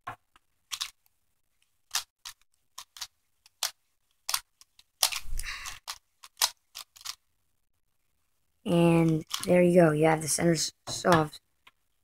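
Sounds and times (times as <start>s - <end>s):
puzzle cube layers clicking: 0.2s - 1.1s, 1.8s - 7.2s, 9.0s - 9.6s.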